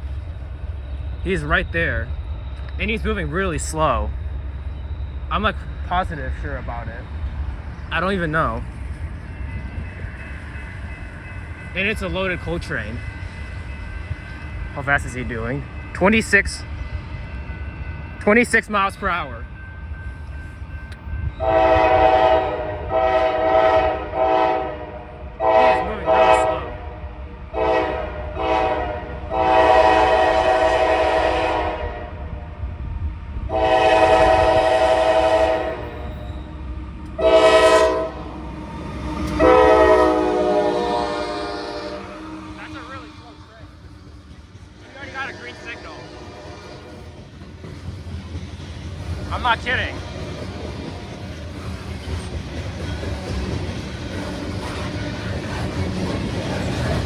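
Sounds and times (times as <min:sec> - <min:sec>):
train rolling past rumble: 0:00.0 - 0:57.0
locomotive horn blasts: 0:21.4 - 0:26.8, 0:27.6 - 0:32.2, 0:33.5 - 0:36.2, 0:37.2 - 0:38.3, 0:39.2 - 0:43.3, 0:45.2 - 0:47.0.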